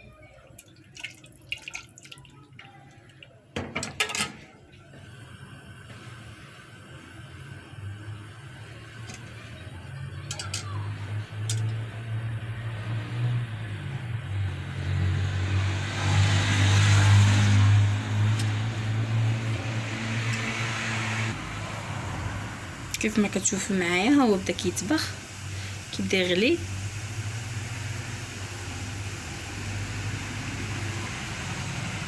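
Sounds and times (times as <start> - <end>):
syrup simmering in a pot: 0.2 - 3.6, 21.6 - 32.0.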